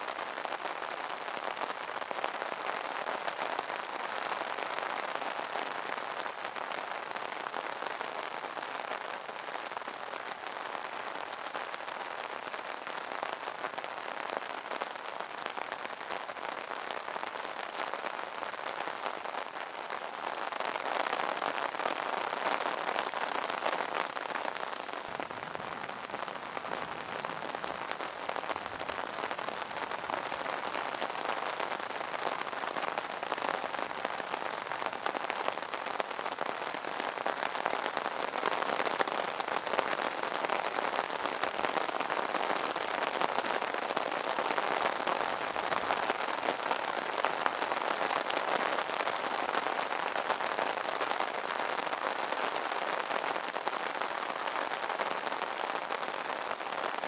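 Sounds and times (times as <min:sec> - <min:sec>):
rain pattering on umbrella: 0:00.0 - 0:57.0.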